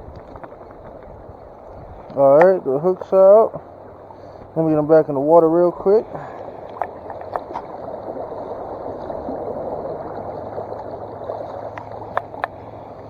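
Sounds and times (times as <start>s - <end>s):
flowing water rushing: 0.0s - 13.0s
faint clicks and taps: 11.7s - 12.6s.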